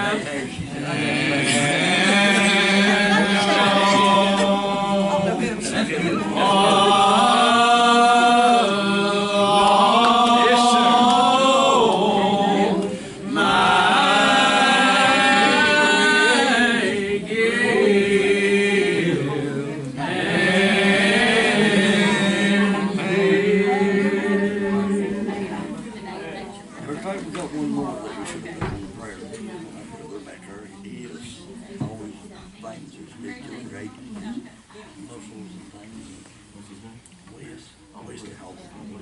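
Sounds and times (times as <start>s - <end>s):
voices singing a hymn: 0.0s - 26.4s.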